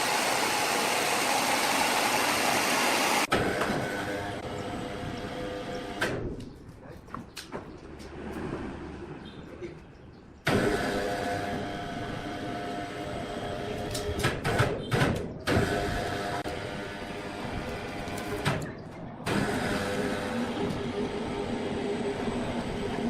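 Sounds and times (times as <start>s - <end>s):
sawmill saw cutting log: 0.0s - 4.5s.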